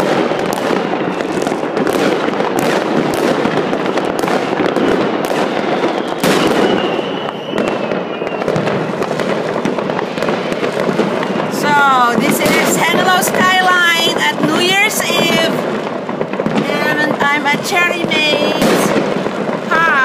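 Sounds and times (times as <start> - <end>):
firework whistle: 0.0 - 12.8
firecracker bangs: 0.0 - 19.9
fireworks crackling: 0.0 - 20.0.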